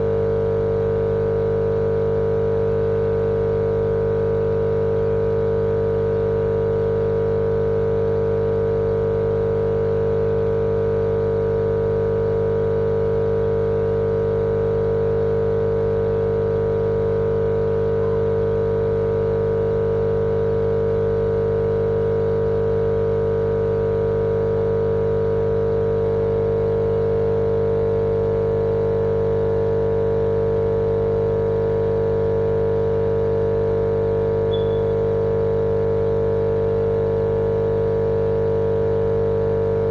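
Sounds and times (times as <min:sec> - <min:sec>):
machine-like hum with drone: 0:34.4 - 0:35.3.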